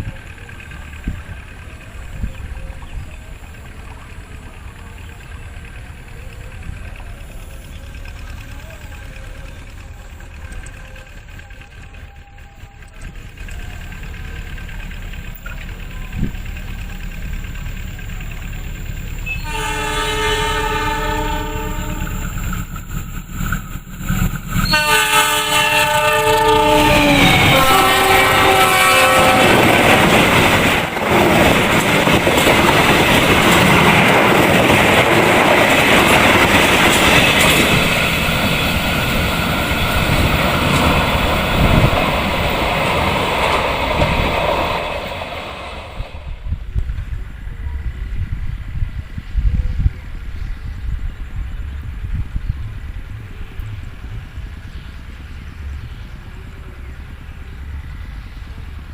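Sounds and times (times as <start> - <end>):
train rumble and wheel clatter: 0.0 - 58.9
locomotive horn blast: 19.2 - 22.5, 24.6 - 29.9.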